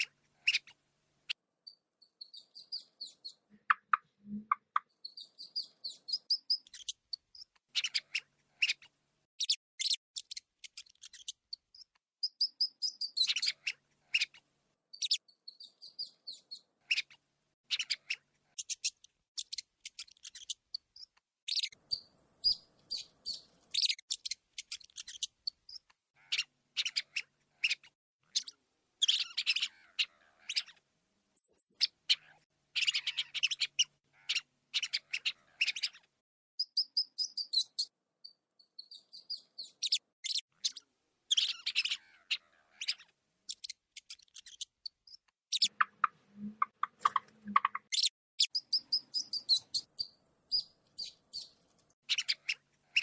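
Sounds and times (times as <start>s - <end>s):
rats squeaking: 0.0s - 0.7s, 1.7s - 30.8s, 31.4s - 53.0s.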